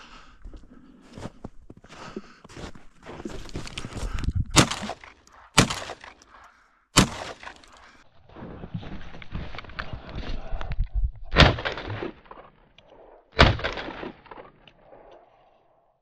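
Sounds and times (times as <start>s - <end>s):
footsteps crunching through snow: 1.0s - 5.0s
shotgun shots: 4.6s - 6.2s, 7.0s - 7.8s, 13.4s - 14.4s.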